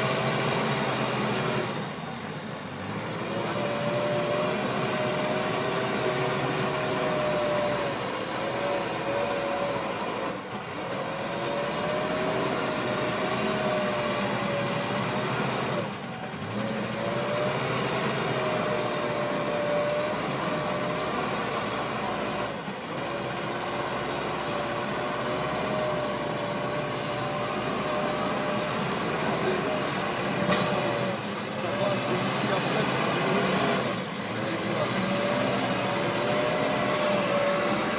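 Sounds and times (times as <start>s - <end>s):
backhoe diesel engine and hydraulics: 0.0s - 37.9s.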